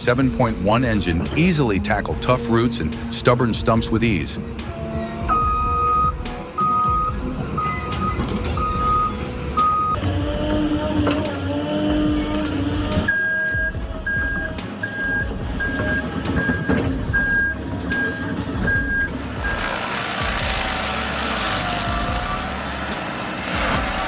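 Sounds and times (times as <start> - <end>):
heavy machine engine running: 0.1 - 24.0
high-pitched backup alarm beeping: 5.3 - 10.0, 13.1 - 19.7
low-pitched backup alarm beeping: 5.3 - 10.0, 13.1 - 19.6.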